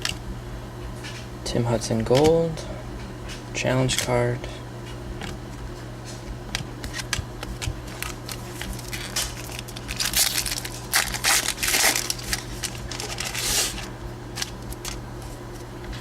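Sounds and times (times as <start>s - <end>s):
wrapper crinkling and crumpling: 7.8s - 15.0s.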